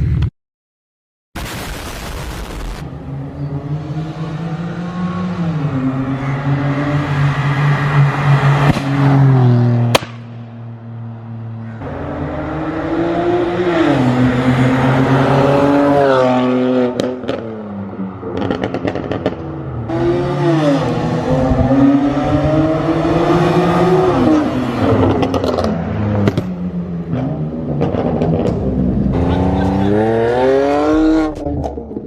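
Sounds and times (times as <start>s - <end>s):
car engine revving with pops: 8.6s - 9.2s, 9.8s - 10.4s, 16.8s - 17.5s, 18.3s - 20.0s, 24.9s - 32.0s.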